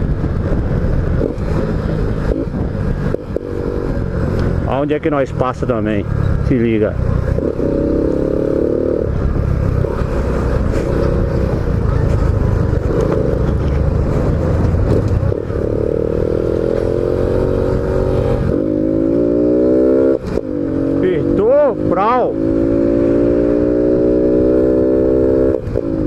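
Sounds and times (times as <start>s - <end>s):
wind rumble on microphone: 0.0s - 4.7s
motorcycle engine accelerating: 0.0s - 26.0s.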